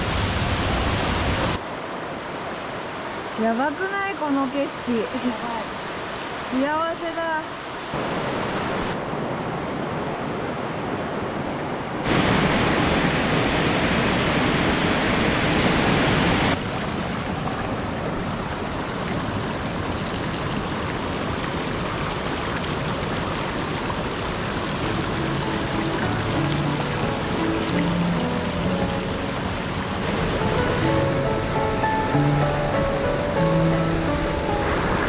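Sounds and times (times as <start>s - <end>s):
stream water rushing: 0.0s - 35.0s.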